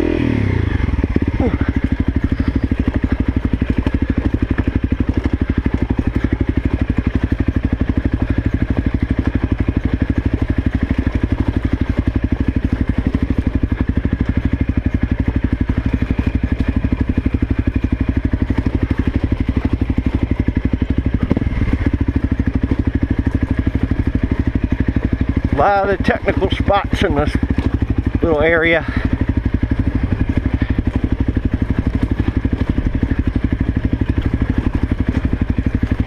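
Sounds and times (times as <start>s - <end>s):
dirt bike engine at low revs: 0.0s - 36.0s.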